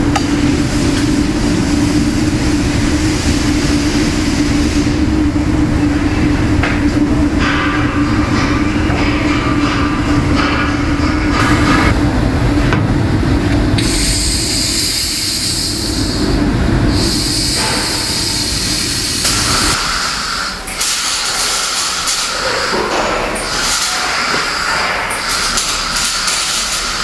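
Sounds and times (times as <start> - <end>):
loud hiss: 13.8 - 22.7.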